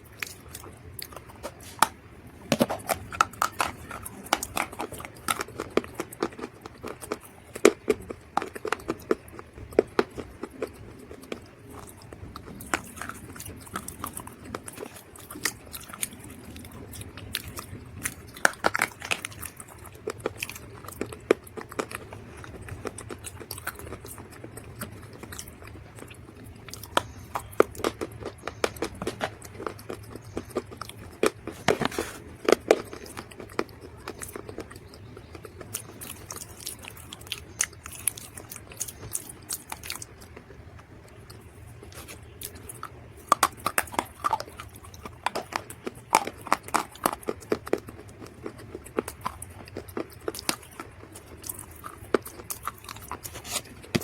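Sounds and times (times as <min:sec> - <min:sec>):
dried mud being chewed: 0:00.0 - 0:54.0.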